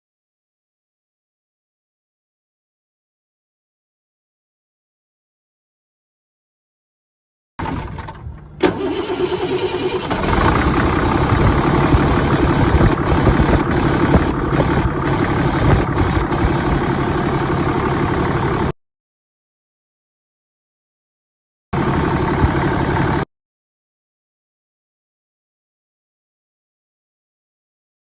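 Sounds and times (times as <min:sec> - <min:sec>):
truck engine cranking and starting: 0:07.6 - 0:18.7, 0:21.8 - 0:23.2.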